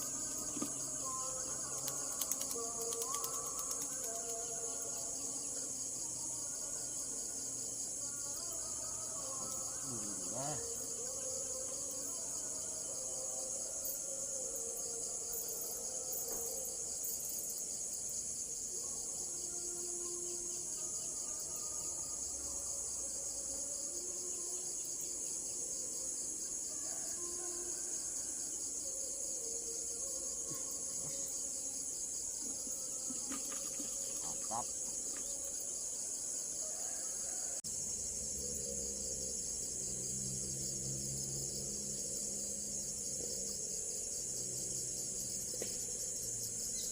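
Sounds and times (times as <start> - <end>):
insects buzzing: 0.0 - 46.9.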